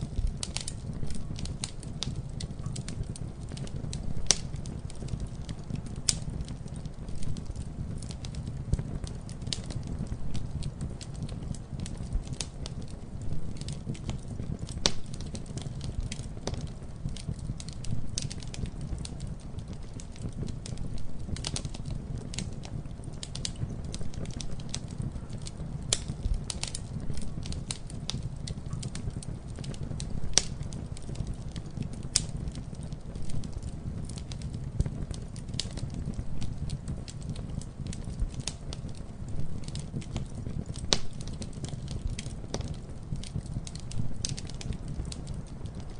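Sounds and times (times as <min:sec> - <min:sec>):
wood fire crackling and popping: 0:00.0 - 0:45.9.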